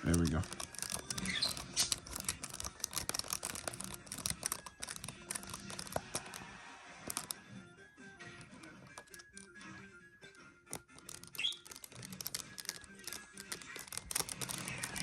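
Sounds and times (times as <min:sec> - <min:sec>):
screwdriver clicks and taps on plastic: 0:00.0 - 0:06.4, 0:07.1 - 0:07.4, 0:10.7 - 0:15.0.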